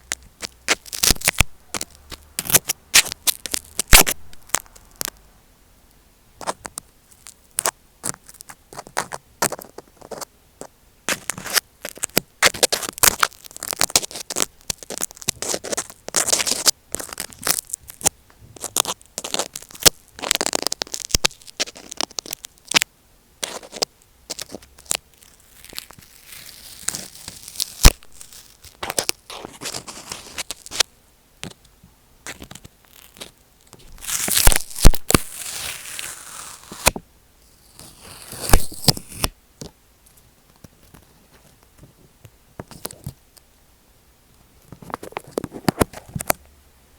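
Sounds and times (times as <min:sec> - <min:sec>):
microphone scratching and crinkling: 0:00.0 - 0:05.1, 0:06.4 - 0:22.5, 0:32.2 - 0:37.0, 0:37.6 - 0:39.3, 0:44.6 - 0:46.4.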